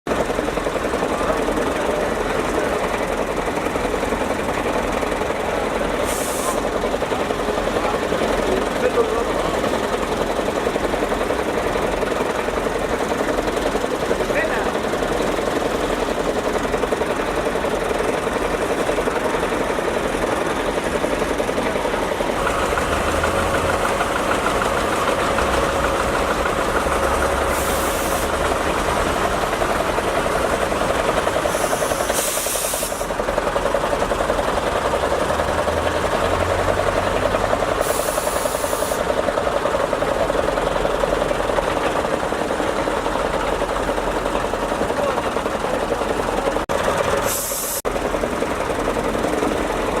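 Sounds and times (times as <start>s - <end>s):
heavy equipment engines idling: 0.1s - 50.0s
brief hisses: 6.0s - 6.6s, 47.2s - 47.8s.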